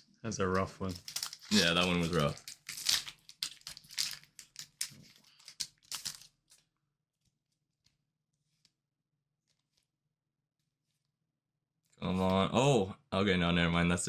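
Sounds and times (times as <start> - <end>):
foil wrapper tearing and crinkling: 0.8 - 6.7.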